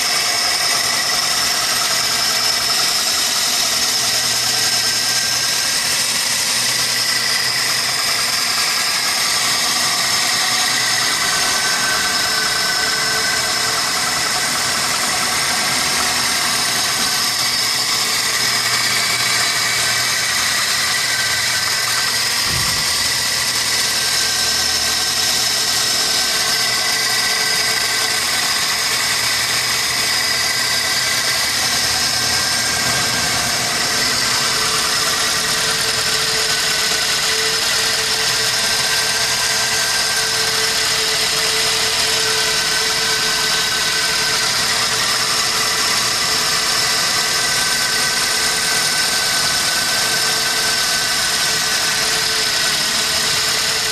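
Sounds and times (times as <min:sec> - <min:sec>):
car engine idling: 0:00.0 - 0:53.9
low thud: 0:22.4 - 0:23.3.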